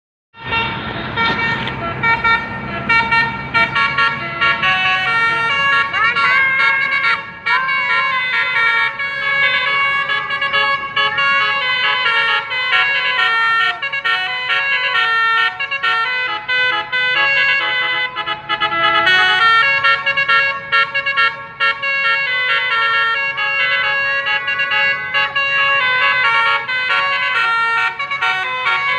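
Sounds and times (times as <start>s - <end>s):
multi-tone air horn tune: 0.4s - 28.9s.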